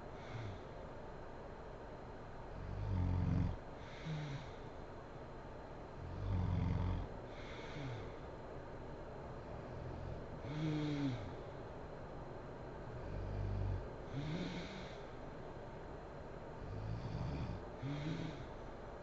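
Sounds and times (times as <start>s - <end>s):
woman snoring: 2.6s - 4.6s, 6.1s - 8.1s, 9.8s - 11.4s, 13.0s - 15.0s, 16.6s - 18.5s.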